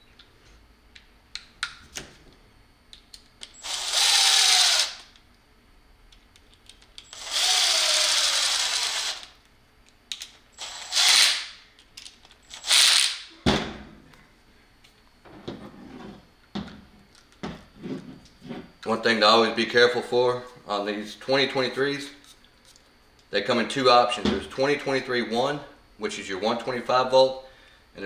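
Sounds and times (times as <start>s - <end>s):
impact drill driving screws: 3.6s - 5.1s, 7.1s - 9.3s, 10.6s - 11.6s, 12.5s - 13.2s
small clicks and handling knocks: 6.1s - 7.1s.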